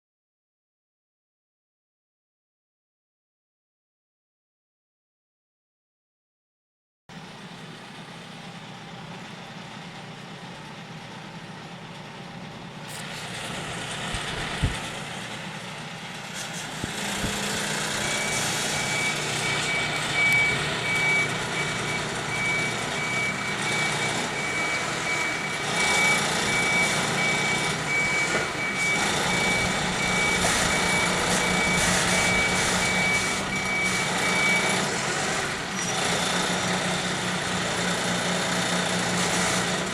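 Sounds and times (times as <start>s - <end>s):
engine running: 7.1s - 39.9s
vehicle reversing beeper: 16.4s - 39.8s.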